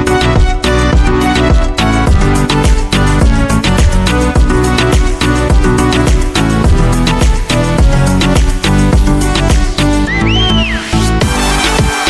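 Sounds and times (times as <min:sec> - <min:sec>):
electronic bass: 0:00.0 - 0:12.0
fast drum beat: 0:02.1 - 0:09.9, 0:11.2 - 0:12.0.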